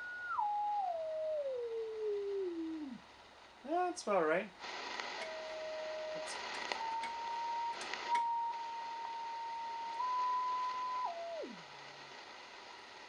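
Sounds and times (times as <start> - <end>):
radio receiver whistle tone: 0.0 - 3.0, 5.0 - 11.7
receiver hiss: 0.0 - 13.0
sharp clicks and crackles: 4.6 - 12.4.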